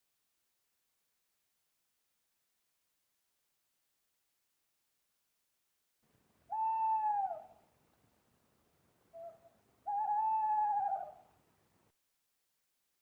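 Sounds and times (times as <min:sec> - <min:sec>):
owl hooting: 0:06.5 - 0:07.6, 0:09.1 - 0:11.3.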